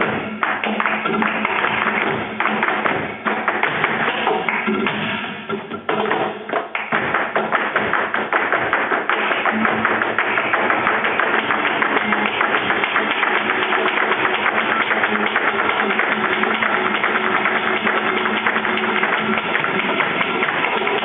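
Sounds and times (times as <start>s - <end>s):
shoes tapping on hard floor: 0.0s - 5.1s, 5.9s - 21.0s
faint flamenco music: 0.0s - 21.0s.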